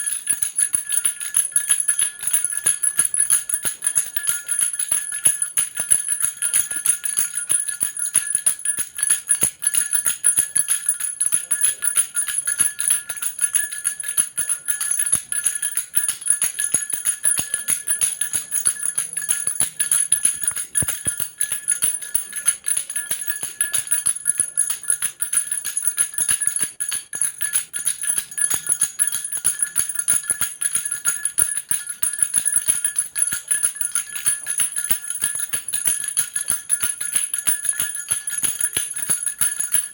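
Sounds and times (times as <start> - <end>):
baby rattle jingling: 0.0 - 39.9.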